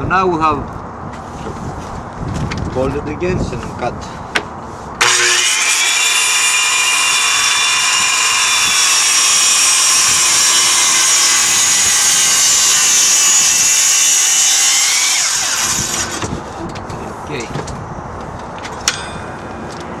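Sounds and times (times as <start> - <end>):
circular saw cutting plywood: 5.0 - 16.5.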